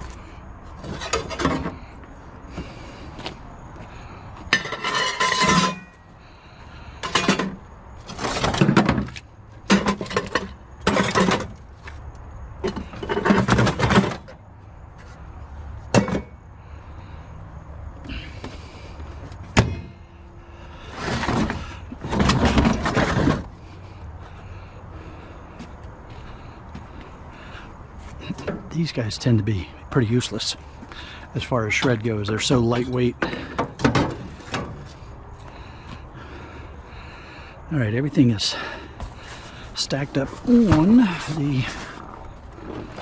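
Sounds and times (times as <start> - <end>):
scrap clattering and scraping: 0.0 - 1.9, 4.4 - 6.1, 6.9 - 12.0, 12.6 - 14.4, 20.7 - 24.0, 31.7 - 35.1, 38.5 - 43.0.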